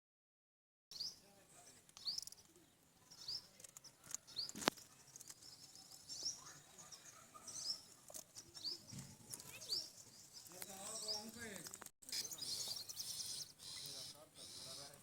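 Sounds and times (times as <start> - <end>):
parrots chirping: 12.1 - 15.0.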